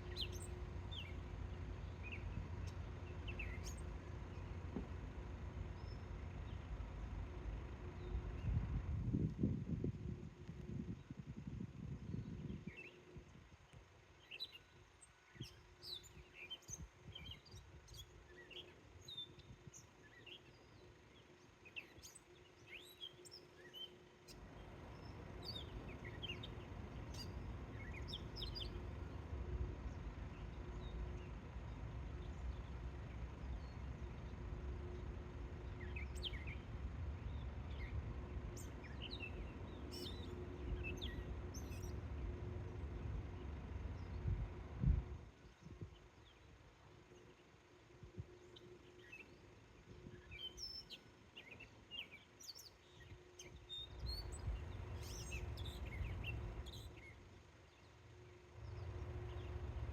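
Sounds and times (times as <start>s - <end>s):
birds chirping: 0.0s - 8.8s, 12.1s - 59.9s
steady low rumble: 0.0s - 21.9s, 22.5s - 52.2s, 52.8s - 59.9s.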